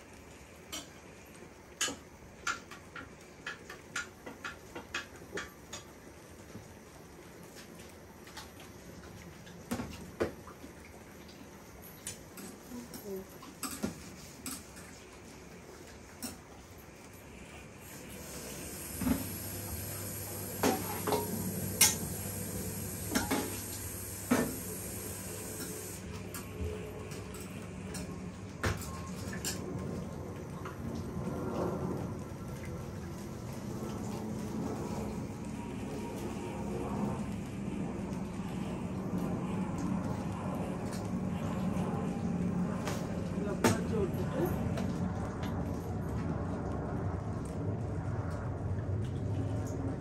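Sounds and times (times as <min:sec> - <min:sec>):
pots and utensils clinking: 0:01.7 - 0:06.1, 0:11.9 - 0:15.0, 0:15.8 - 0:16.5, 0:20.6 - 0:22.2, 0:23.0 - 0:23.7
utensil tapping a cooking pot: 0:01.8 - 0:06.0
steady low hum: 0:16.2 - 0:50.0.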